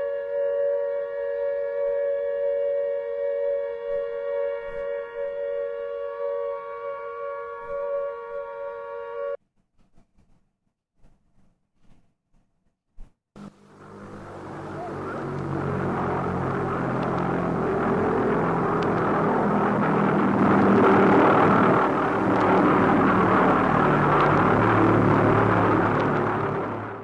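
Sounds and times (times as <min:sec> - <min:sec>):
propeller aircraft engines droning: 0:13.4 - 0:27.0.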